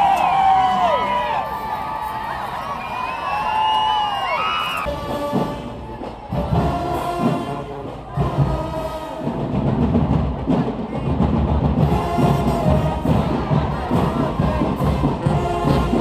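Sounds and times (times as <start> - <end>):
music with heavy drum beats: 4.9 - 16.0.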